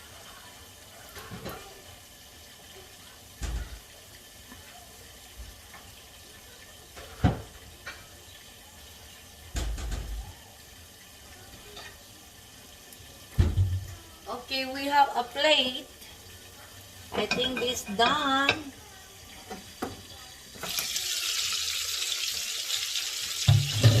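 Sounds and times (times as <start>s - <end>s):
meat sizzling in a pan: 0.0s - 24.0s
knocks on a pan: 7.0s - 7.6s, 9.5s - 10.2s, 13.3s - 14.0s, 23.4s - 24.0s.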